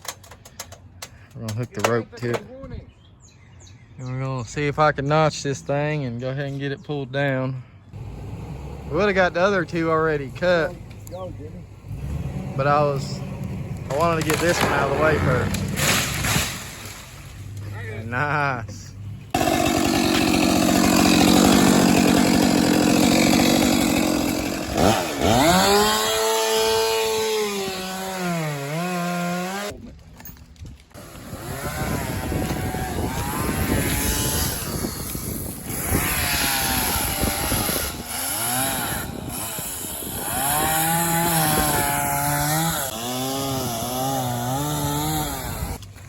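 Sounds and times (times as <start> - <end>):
chainsaw cutting wood: 12.0 - 17.4, 19.3 - 29.8, 30.9 - 45.9.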